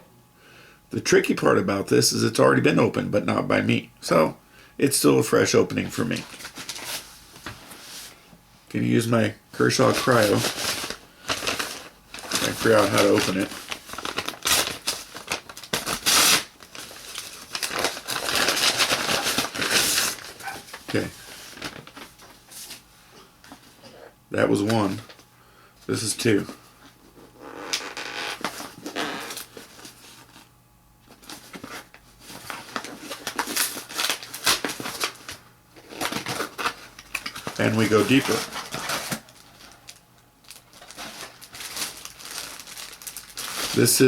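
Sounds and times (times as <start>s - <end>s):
packaging crinkling and tearing: 9.8s - 22.4s, 27.5s - 30.5s, 31.1s - 44.0s.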